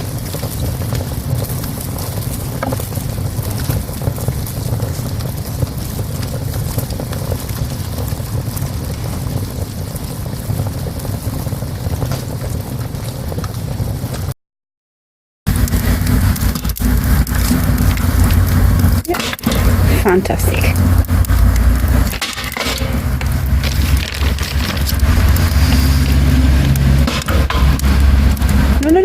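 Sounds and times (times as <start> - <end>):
wood fire crackling in stove: 0.0 - 14.3, 15.5 - 29.0
low rumble: 15.5 - 29.0.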